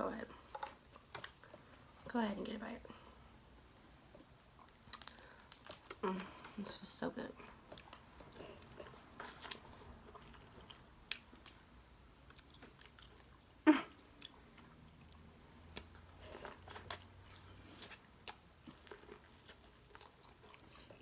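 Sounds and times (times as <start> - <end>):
small clicks and crunches: 0.5 - 1.6, 4.6 - 6.6
people chewing and biting: 4.1 - 6.6, 7.5 - 21.0.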